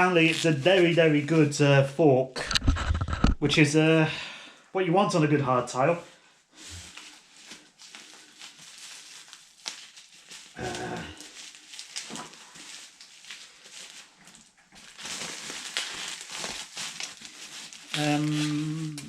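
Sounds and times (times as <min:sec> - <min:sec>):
rustling and clicking: 0:02.4 - 0:03.6.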